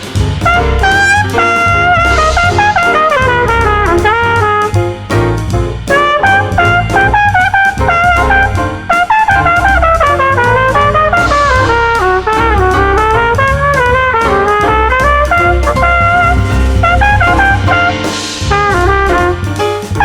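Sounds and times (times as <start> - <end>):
drum kit: 0.0 - 20.0
piano: 0.0 - 20.0
walking bass: 0.0 - 20.0
horn solo: 0.4 - 20.0
cymbal crash: 16.4 - 18.8.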